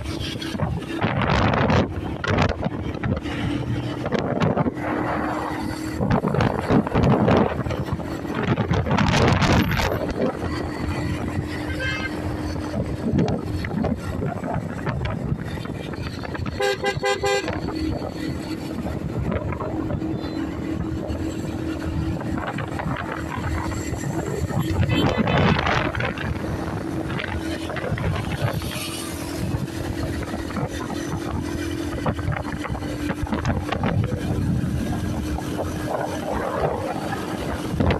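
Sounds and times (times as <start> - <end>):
motorcycle engine hum: 0.0 - 37.9
road and traffic noise: 0.0 - 37.9
wind buffeting microphone: 0.0 - 37.9.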